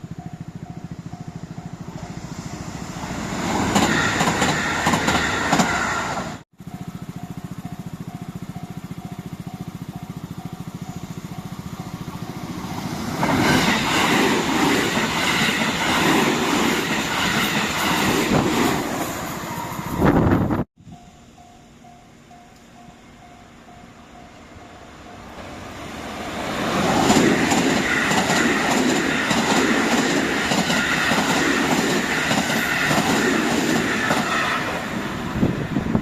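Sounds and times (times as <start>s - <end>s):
train wheels clattering past: 0.2s - 20.0s, 25.4s - 35.3s.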